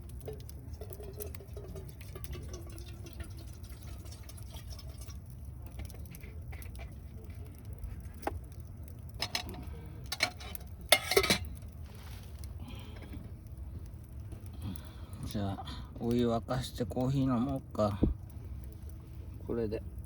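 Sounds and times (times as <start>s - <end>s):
cookware clinking and knocking: 9.2s - 11.5s
cookware clatter: 9.2s - 11.6s.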